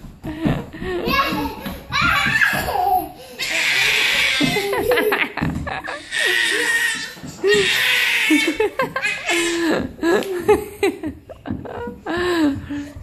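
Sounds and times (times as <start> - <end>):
small children laughing: 0.8 - 12.2
children squealing: 3.4 - 4.7, 6.0 - 9.6.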